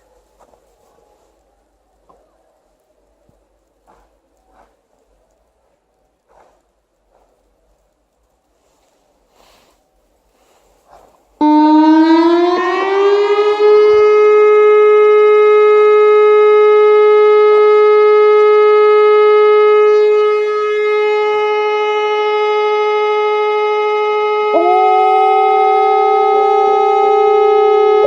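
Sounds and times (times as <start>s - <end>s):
air raid siren winding up: 11.4s - 28.0s.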